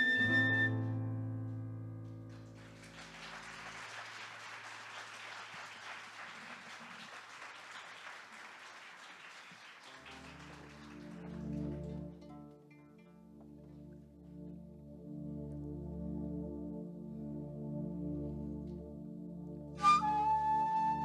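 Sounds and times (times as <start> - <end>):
audience applauding: 2.3 - 12.4.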